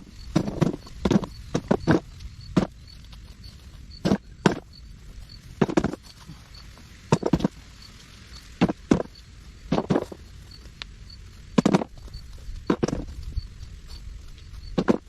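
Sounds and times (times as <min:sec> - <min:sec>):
sharp knocks and thuds: 0:00.0 - 0:02.8, 0:04.0 - 0:04.7, 0:05.6 - 0:06.1, 0:07.1 - 0:07.6, 0:08.6 - 0:10.2, 0:11.5 - 0:12.0, 0:12.7 - 0:13.2, 0:14.7 - 0:15.0.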